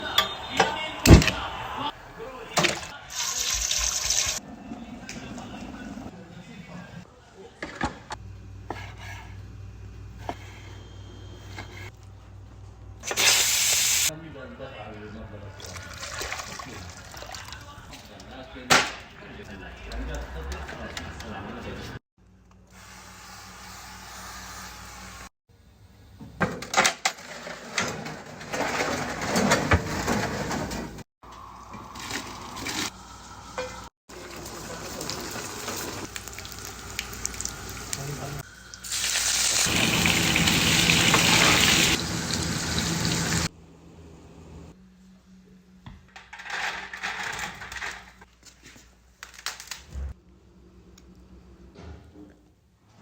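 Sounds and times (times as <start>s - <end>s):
meat sizzling in a pot: 34.1s - 43.5s
tap water rushing: 39.4s - 43.5s.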